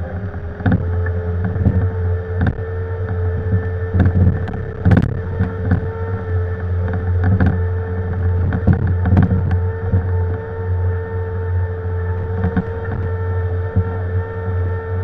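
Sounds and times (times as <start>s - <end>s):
diesel excavator running: 0.0s - 15.0s
steady whine: 0.0s - 15.0s
knocks and scrapes of digging: 0.6s - 10.4s, 12.2s - 14.1s.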